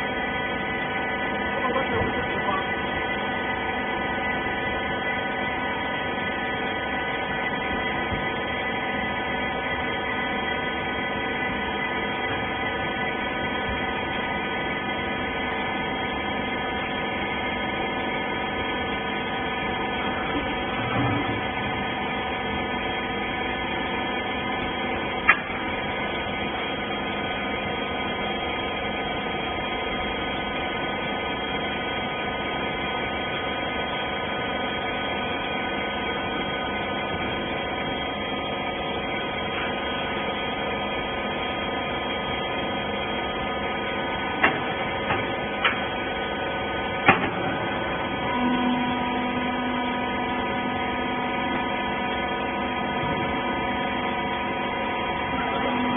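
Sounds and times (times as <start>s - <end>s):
motor and hydraulic pump humming: 0.0s - 55.9s
machine tone: 44.2s - 55.9s.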